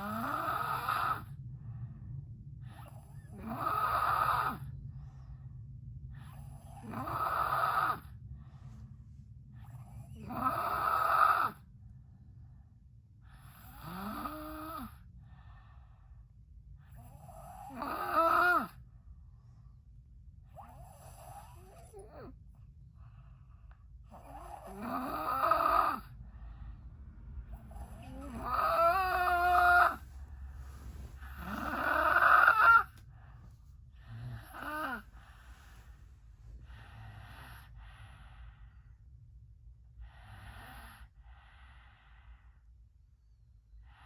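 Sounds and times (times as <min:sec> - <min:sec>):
person snoring loudly: 0:00.0 - 0:01.3, 0:03.4 - 0:04.6, 0:06.8 - 0:08.1, 0:10.2 - 0:11.6, 0:13.6 - 0:15.0, 0:17.3 - 0:18.7, 0:24.2 - 0:26.1, 0:27.7 - 0:30.0, 0:30.8 - 0:32.9, 0:34.0 - 0:35.4
person breathing heavily: 0:26.0 - 0:39.1, 0:39.9 - 0:42.8.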